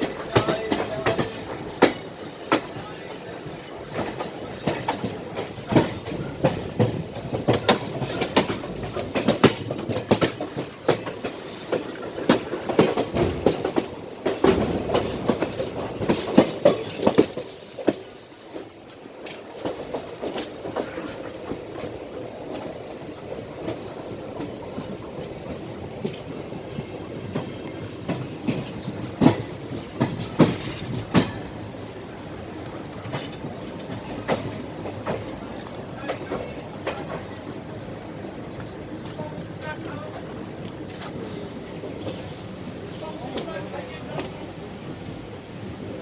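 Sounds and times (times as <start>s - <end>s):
train rumble: 0.0s - 46.0s
train wheels clattering over rail joints: 0.0s - 46.0s.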